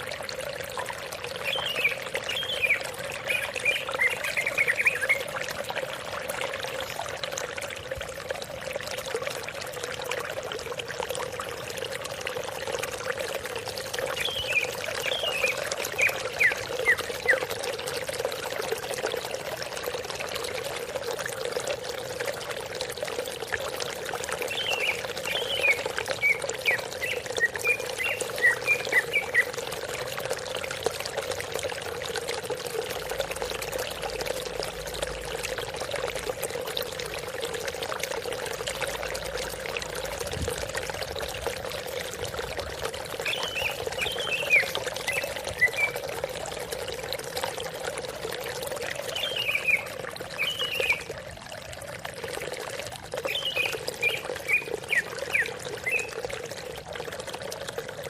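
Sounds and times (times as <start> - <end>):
running water: 0.0 - 58.0
bird singing high chirps: 43.3 - 46.0, 49.1 - 49.8, 50.4 - 51.0, 53.3 - 56.1.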